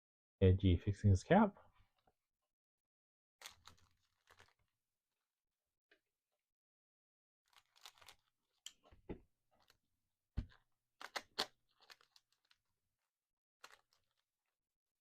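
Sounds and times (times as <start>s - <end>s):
card stock and foil wrapper rustling: 3.4s - 4.7s, 7.5s - 8.6s, 11.0s - 12.6s, 13.6s - 14.3s.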